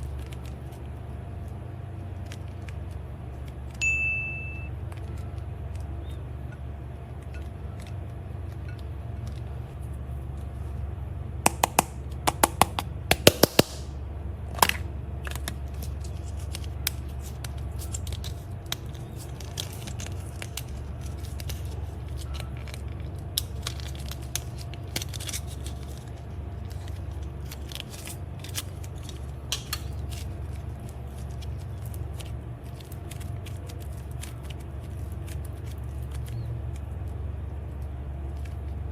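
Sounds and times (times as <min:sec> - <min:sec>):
steady low hum: 0:00.0 - 0:38.9
loud slime snaps: 0:11.5 - 0:13.9.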